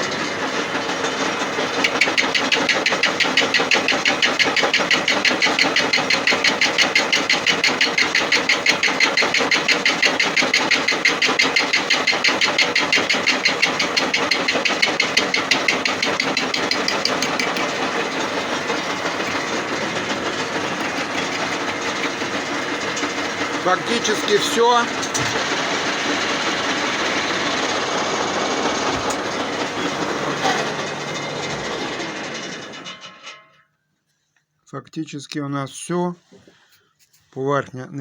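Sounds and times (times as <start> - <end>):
lathe cutting tool knocking: 0.0 - 33.1.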